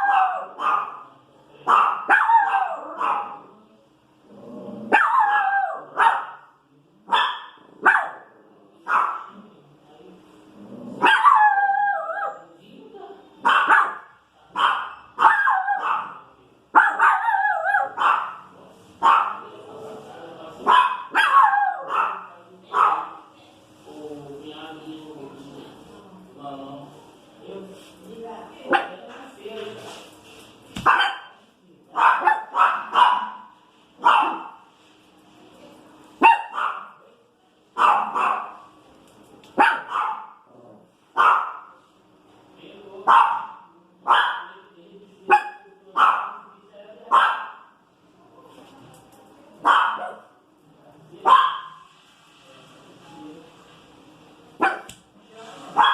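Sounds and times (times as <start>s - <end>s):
small dog barking: 0.0s - 1.0s, 1.6s - 3.5s, 4.9s - 6.5s, 7.1s - 8.3s, 8.9s - 9.4s, 11.0s - 12.4s, 13.4s - 18.4s, 19.0s - 19.4s, 20.6s - 23.3s, 30.8s - 34.6s, 36.2s - 37.0s, 37.8s - 38.7s, 39.6s - 40.4s, 41.2s - 41.8s, 43.1s - 44.5s, 45.3s - 46.5s, 47.1s - 47.7s, 49.6s - 50.4s, 51.2s - 51.9s, 54.6s - 55.0s.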